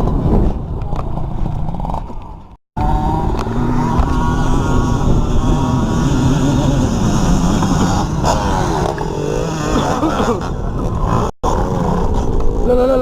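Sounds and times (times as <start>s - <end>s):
dirt bike engine revving: 2.8s - 12.3s.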